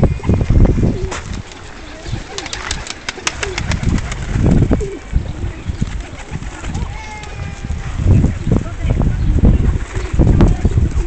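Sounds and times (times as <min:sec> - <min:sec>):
pigeons cooing: 0:00.0 - 0:08.4.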